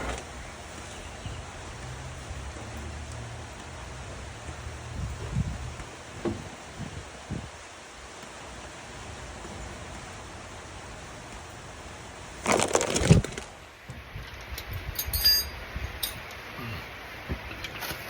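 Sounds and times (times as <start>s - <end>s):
light metallic clinks: 14.2s - 16.5s.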